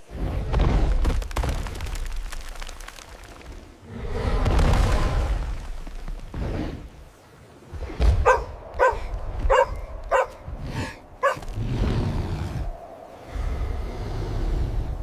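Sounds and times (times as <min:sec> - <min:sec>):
puppy barking: 0:08.2 - 0:10.4.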